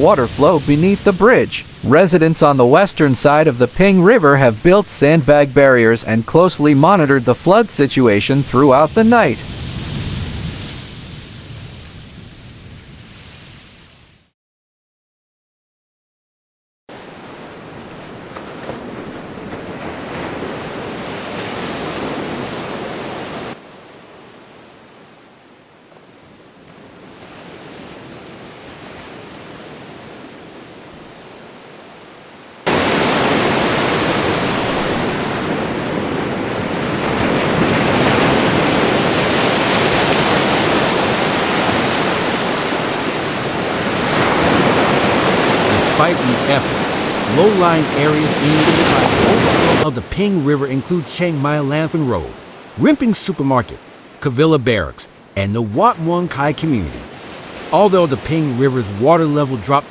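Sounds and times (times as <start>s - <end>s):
floodwater rushing: 0.0s - 11.1s, 32.7s - 59.9s.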